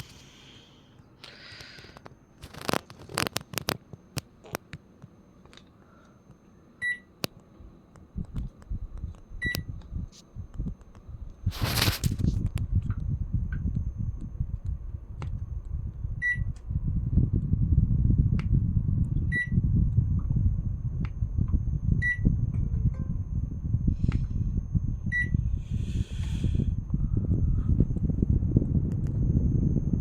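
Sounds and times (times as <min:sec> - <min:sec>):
low rumble: 0:08.1 - 0:30.0.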